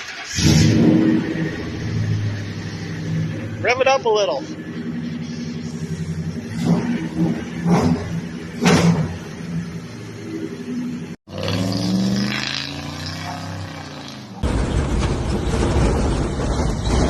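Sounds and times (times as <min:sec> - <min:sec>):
car engine revving: 0:00.0 - 0:17.0
engine running with wavering note: 0:00.0 - 0:17.0.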